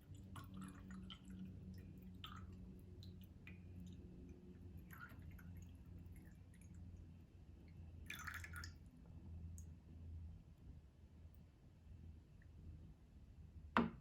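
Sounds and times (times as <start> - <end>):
faint water drips: 0.0 - 9.9.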